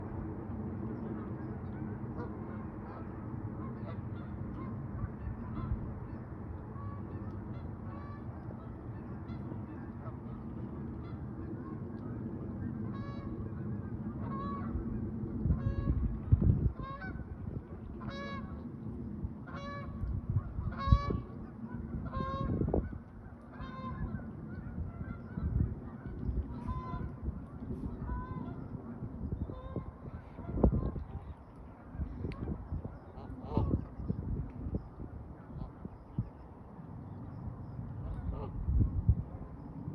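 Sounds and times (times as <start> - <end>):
steady low rumble: 0.0 - 39.9
goose honking: 1.1 - 6.2, 6.8 - 11.8, 12.8 - 14.8, 16.7 - 17.4, 18.0 - 18.6, 19.4 - 31.4, 32.2 - 33.9.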